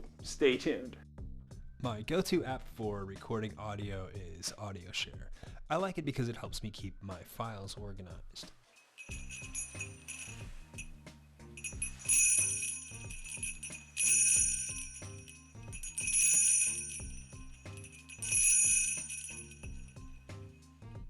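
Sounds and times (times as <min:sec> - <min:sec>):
jingle bells shaken: 0:09.0 - 0:10.9, 0:11.6 - 0:20.6
background music with steady beat: 0:09.0 - 0:21.0.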